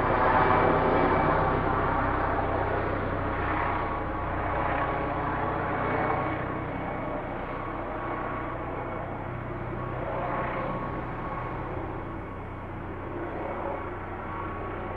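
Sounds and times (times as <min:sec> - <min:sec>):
helicopter hovering: 0:00.0 - 0:14.9.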